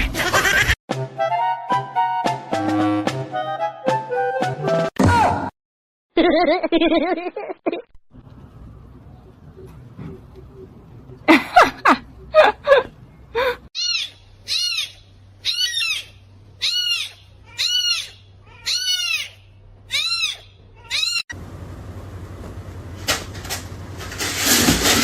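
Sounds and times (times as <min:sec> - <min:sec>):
kitten meowing: 0:13.8 - 0:21.2.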